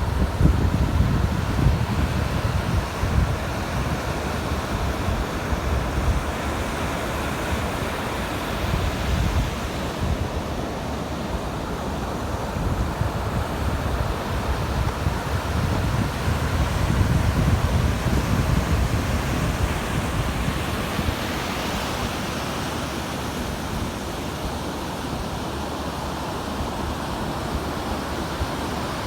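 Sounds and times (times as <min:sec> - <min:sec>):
wind buffeting microphone: 0:00.0 - 0:22.0
ocean surf washing: 0:00.0 - 0:29.0.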